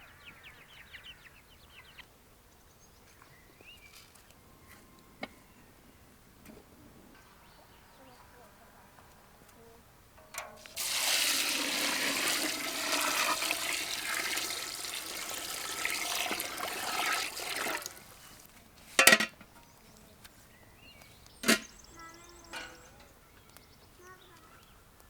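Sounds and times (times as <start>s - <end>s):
water gushing: 10.6s - 18.5s.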